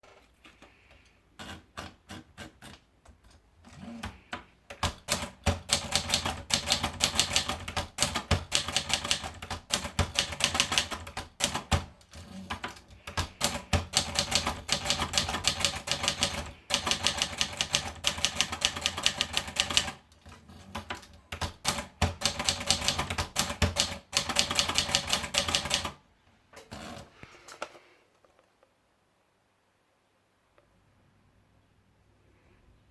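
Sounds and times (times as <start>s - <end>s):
manual typewriter keystrokes: 1.4s - 26.0s.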